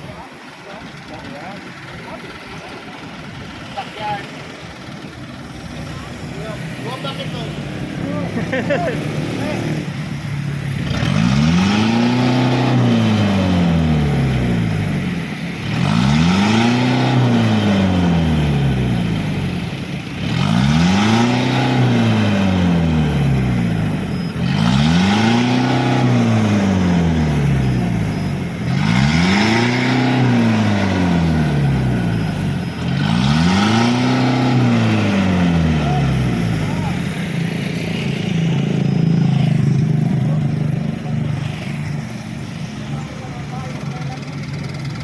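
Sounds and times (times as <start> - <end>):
diesel engine revving: 0.0 - 45.0.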